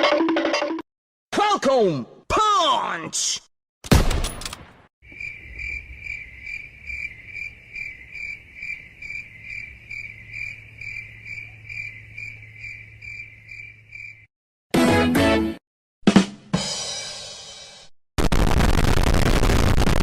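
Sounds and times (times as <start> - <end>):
crickets chirping: 5.0 - 14.3.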